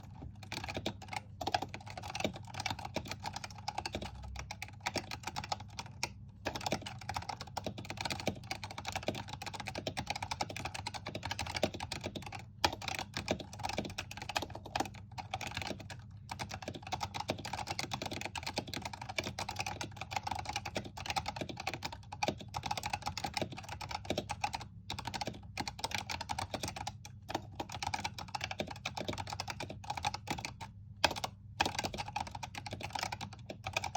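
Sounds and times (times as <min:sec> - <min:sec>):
fast keyboard typing: 0:00.0 - 0:33.9.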